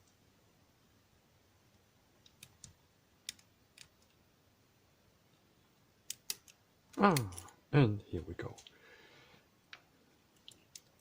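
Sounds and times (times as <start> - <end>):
lock pick metallic clicks: 6.1 - 7.5.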